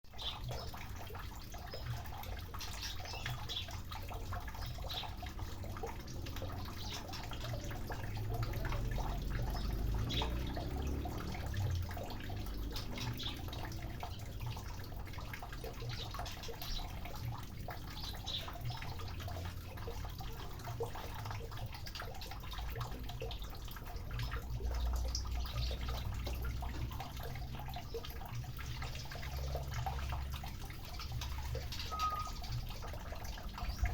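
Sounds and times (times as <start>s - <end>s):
water splashing and dripping: 0.0s - 33.9s
low steady rumble: 3.8s - 17.6s.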